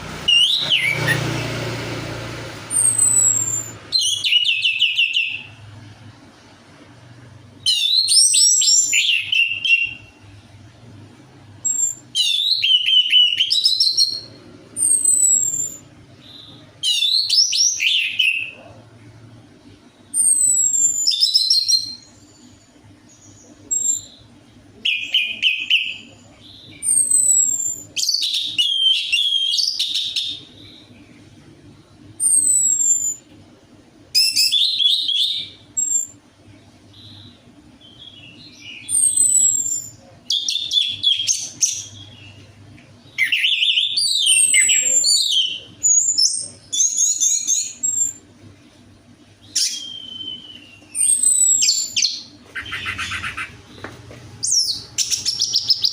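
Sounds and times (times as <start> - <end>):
faint low hum: 0.0 - 55.9
high falling whistles: 0.2 - 1.5.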